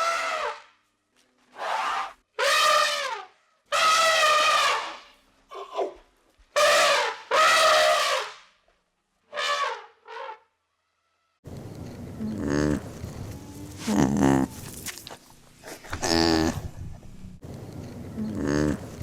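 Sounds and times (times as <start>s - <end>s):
animal calling: 12.2s - 14.8s.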